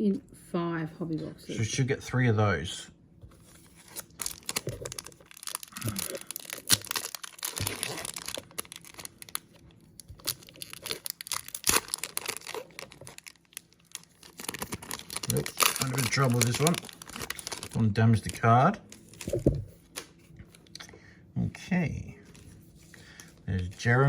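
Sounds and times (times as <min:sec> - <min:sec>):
cards clicking and rustling: 0:03.3 - 0:20.8
pack wrapper crinkling and tearing: 0:03.5 - 0:20.8.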